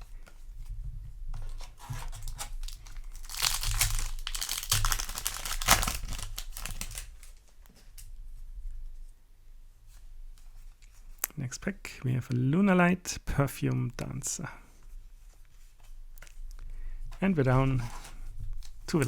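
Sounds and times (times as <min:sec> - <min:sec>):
foil wrapper tearing and crinkling: 0:01.8 - 0:07.4.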